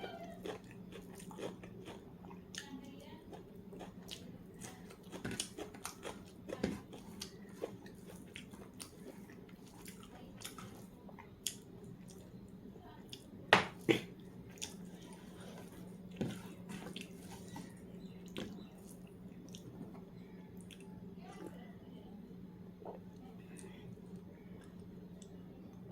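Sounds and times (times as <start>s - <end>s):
person chewing: 0.4s - 2.7s, 3.3s - 12.3s, 13.1s - 20.0s, 20.6s - 21.0s.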